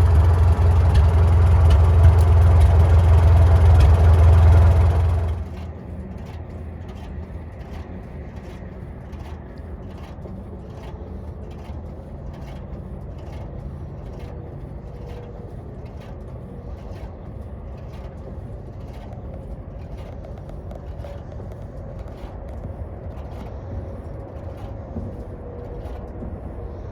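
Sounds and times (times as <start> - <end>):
tractor engine running: 0.0 - 6.3.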